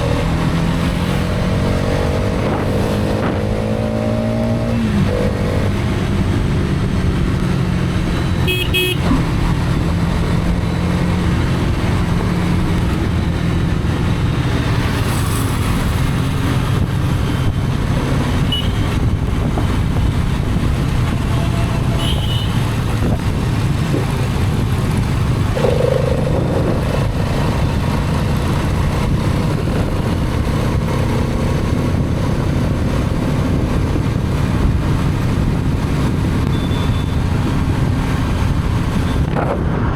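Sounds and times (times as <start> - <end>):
wind and road noise: 0.0 - 39.9
motorcycle engine running: 5.0 - 39.0
short horn toots: 8.4 - 9.2.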